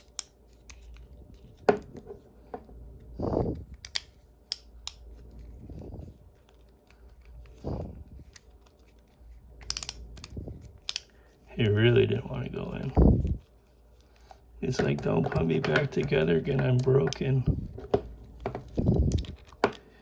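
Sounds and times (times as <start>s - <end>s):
soft handling noises: 0.0s - 20.0s
pliers clicking and snapping: 9.6s - 11.1s.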